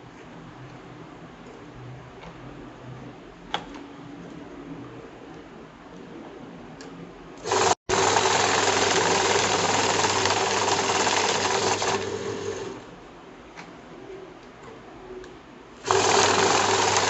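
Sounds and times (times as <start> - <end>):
banknote counting machine whirring: 7.4 - 12.8, 15.8 - 17.0.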